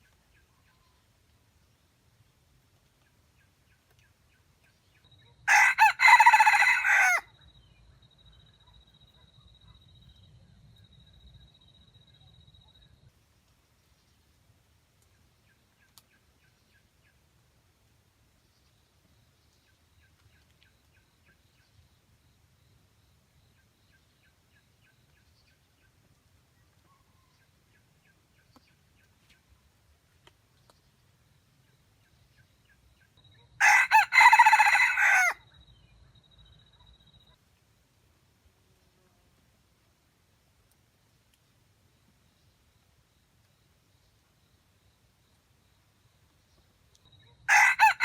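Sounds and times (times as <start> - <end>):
rooster crowing: 5.5 - 7.3, 33.6 - 35.4, 47.5 - 48.0.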